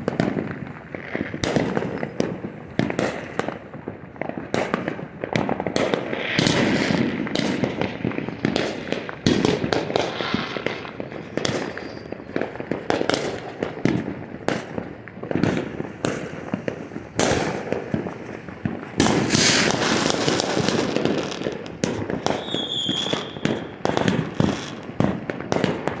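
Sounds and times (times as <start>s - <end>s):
fireworks bangs and crackling: 0.0s - 26.0s
high firework whistle: 9.9s - 12.4s, 19.0s - 24.8s.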